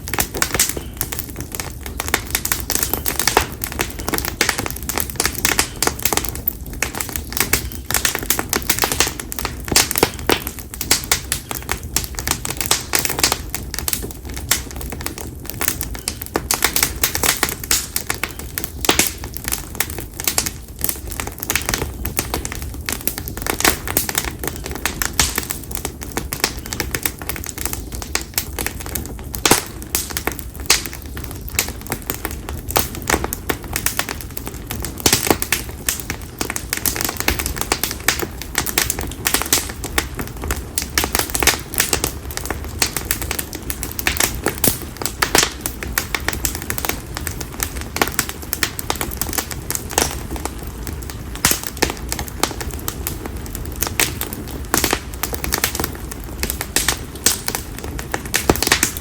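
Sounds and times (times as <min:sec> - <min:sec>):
campfire crackling and popping: 0:00.0 - 0:59.0.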